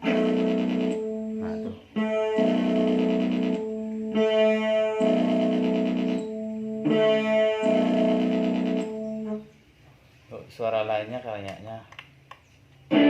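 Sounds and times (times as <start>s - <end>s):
electric guitar chords with effects: 0.0s - 9.6s.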